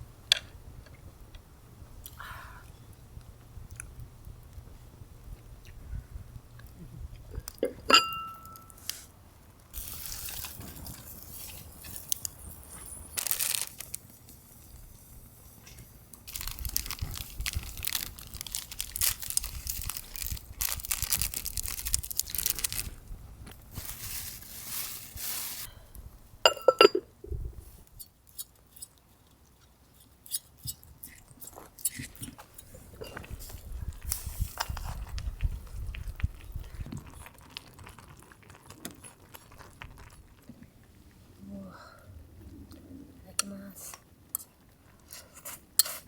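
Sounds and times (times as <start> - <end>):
rustling and crinkling: 8.4 - 25.9, 30.7 - 41.4.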